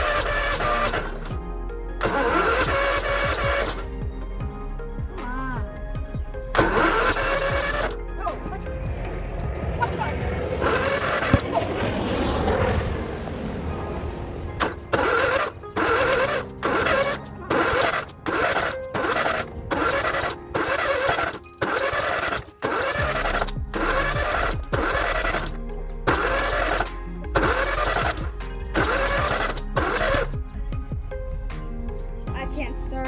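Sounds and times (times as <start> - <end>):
choppy stop-start music: 2.0 - 3.9, 6.5 - 11.4, 14.6 - 31.2.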